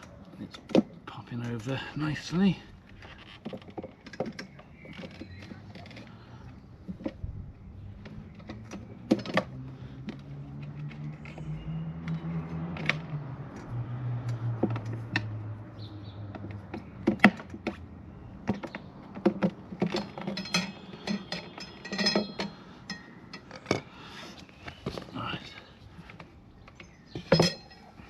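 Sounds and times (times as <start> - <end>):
metal tyre levers clicking on rim: 7.8 - 24.9, 26.1 - 28.0.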